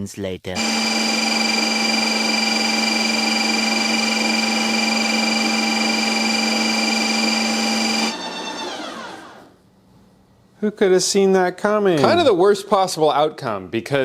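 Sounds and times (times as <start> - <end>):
blender motor whining: 0.6 - 9.6.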